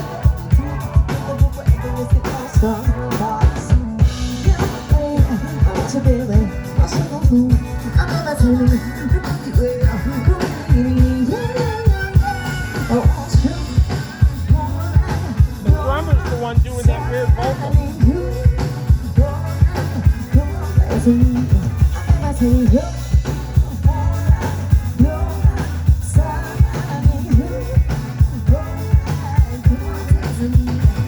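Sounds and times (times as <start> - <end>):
live band playing: 0.0 - 31.0
wavering sung vocal: 0.0 - 31.0.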